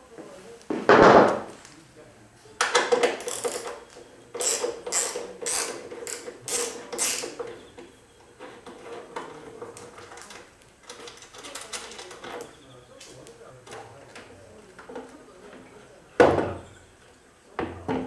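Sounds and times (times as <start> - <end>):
mechanical clicking and rattling: 2.6 - 7.6.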